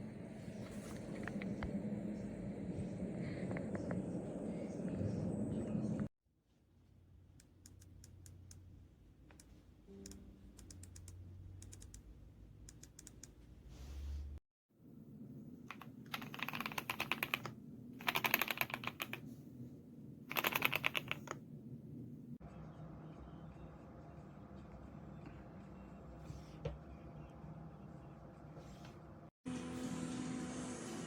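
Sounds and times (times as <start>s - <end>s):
typing on mechanical keyboard: 15.7s - 19.2s, 20.3s - 21.4s.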